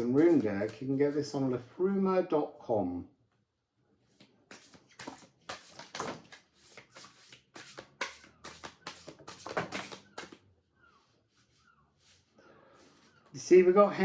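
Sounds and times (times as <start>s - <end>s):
cards being shuffled by hand: 4.1s - 10.4s.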